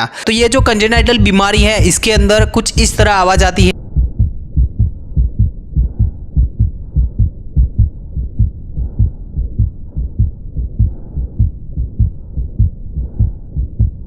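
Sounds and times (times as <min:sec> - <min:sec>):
heartbeat thumps: 0:00.4 - 0:14.0
heart murmur: 0:00.5 - 0:14.0.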